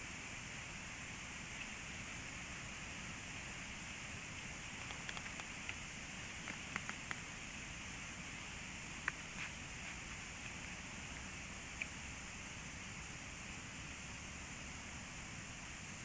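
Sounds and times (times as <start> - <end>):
steady hiss: 0.0 - 16.0.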